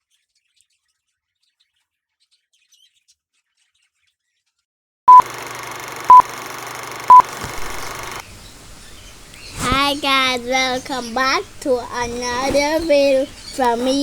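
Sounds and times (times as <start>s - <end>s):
short electronic beeps: 5.1s - 5.3s, 6.1s - 6.3s, 7.0s - 8.2s
steady hiss: 7.3s - 14.0s.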